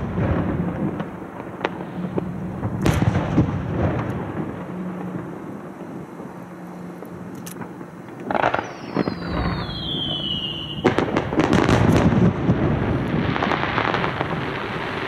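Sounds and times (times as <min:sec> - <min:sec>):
firework burst: 0:00.0 - 0:15.0
fireworks crackling: 0:00.0 - 0:15.0
high whistle gliding down: 0:08.4 - 0:11.1.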